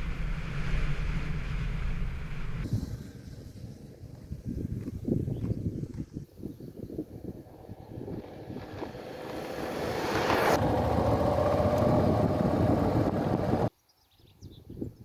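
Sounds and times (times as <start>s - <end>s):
wind rushing over microphone: 2.5s - 13.7s
motorcycle engine running: 7.5s - 13.7s.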